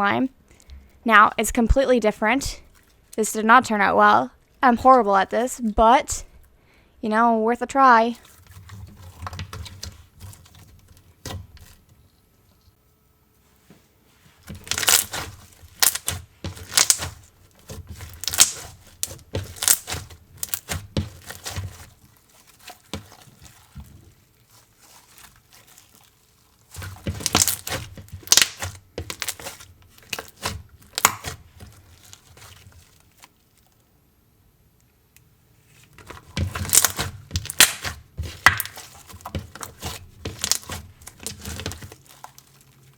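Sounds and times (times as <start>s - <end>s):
slime squishing and popping: 14.5s - 32.6s, 36.1s - 42.7s.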